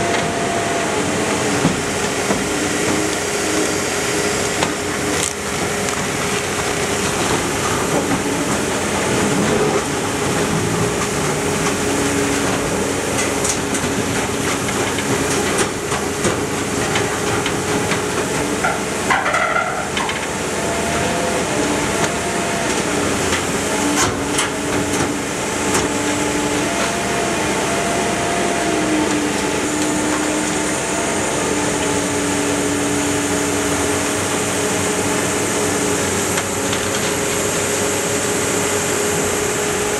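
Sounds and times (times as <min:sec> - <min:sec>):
car baler hydraulic whine: 0:00.0 - 0:39.9
metal clanks and knocks: 0:07.0 - 0:20.3.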